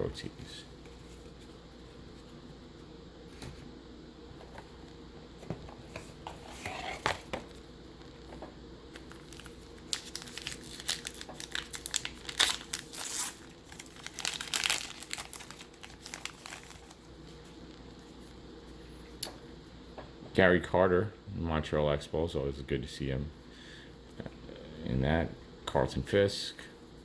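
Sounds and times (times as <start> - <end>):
wrapper crinkling and tearing: 9.0 - 17.1.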